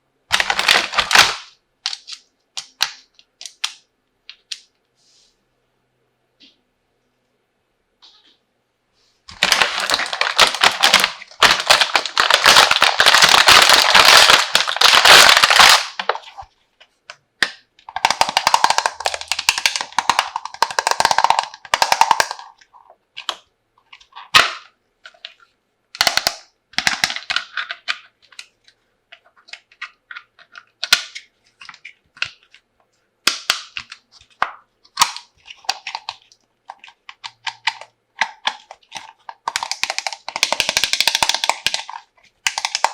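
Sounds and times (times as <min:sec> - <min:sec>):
plastic packaging crinkling: 0:00.3 - 0:03.6, 0:09.3 - 0:16.5, 0:17.9 - 0:25.4
plastic toy pieces clacking: 0:09.4 - 0:16.2, 0:17.9 - 0:23.4, 0:26.0 - 0:28.5, 0:33.3 - 0:42.9.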